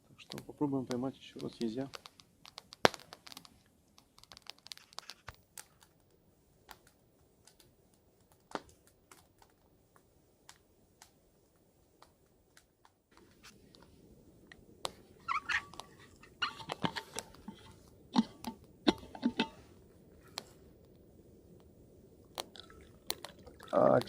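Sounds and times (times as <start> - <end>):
packaging crinkles and clicks: 2.0 - 6.1.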